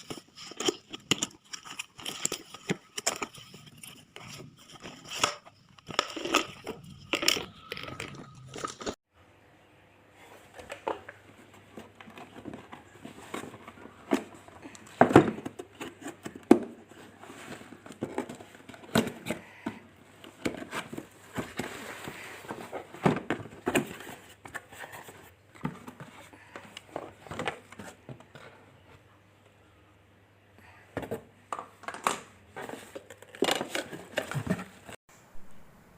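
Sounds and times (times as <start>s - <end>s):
plastic parts clicking and knocking: 0.0s - 9.0s, 31.0s - 34.9s.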